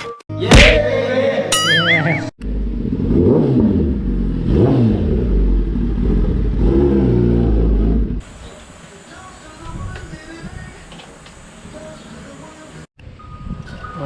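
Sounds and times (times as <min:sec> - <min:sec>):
motorcycle engine revving: 0:02.4 - 0:08.3.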